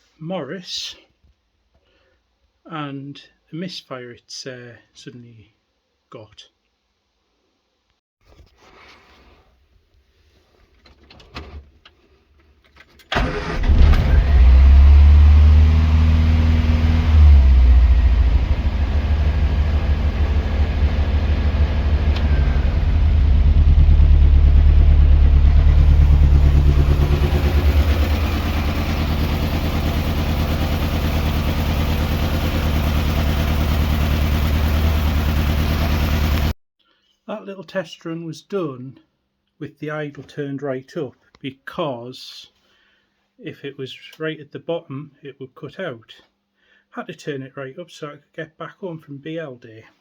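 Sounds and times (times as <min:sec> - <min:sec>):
car engine starting and revving: 0:13.1 - 0:36.6.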